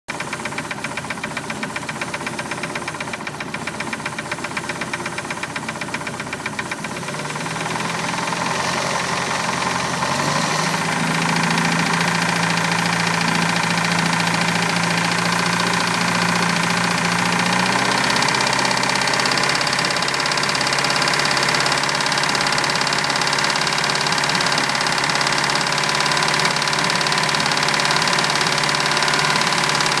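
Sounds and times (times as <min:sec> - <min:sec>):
boat engine running with a knock: 0:00.1 - 0:08.1.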